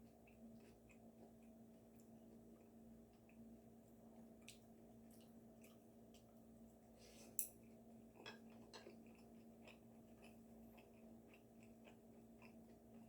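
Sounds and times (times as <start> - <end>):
faint chewing: 0.0 - 3.5, 4.1 - 13.0
small eating clicks: 8.1 - 13.0.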